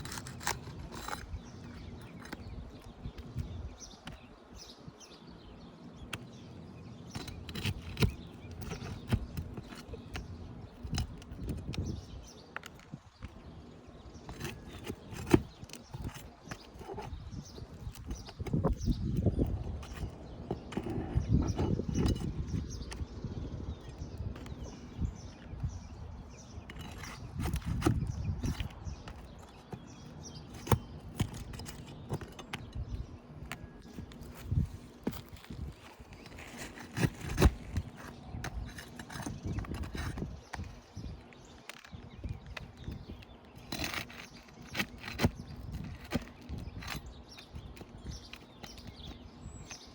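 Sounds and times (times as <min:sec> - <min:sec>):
clicks knocks and scrapes on shingle: 0:00.0 - 0:49.9.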